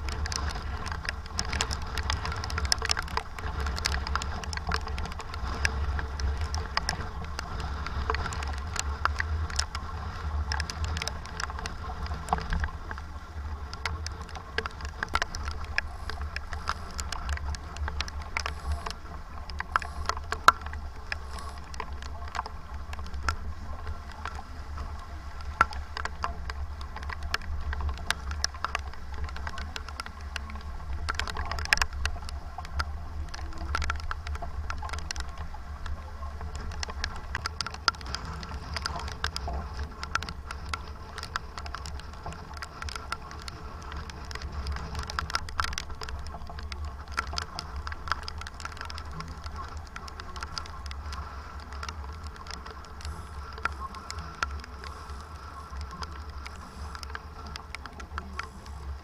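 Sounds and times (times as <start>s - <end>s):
rushing water: 0.0s - 59.0s
sharp ticks: 0.0s - 59.0s
wind rumble on microphone: 0.0s - 59.0s.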